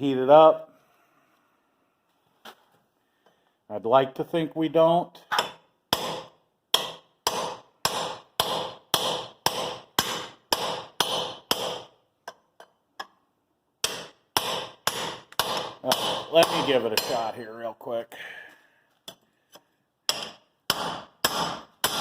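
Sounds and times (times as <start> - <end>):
hammer striking steel chisel: 5.2 - 13.2, 13.8 - 17.4, 19.0 - 22.0.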